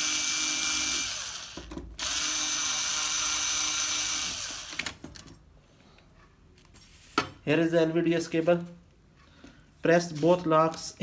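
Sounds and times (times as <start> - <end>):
cordless screwdriver running: 0.0 - 4.9.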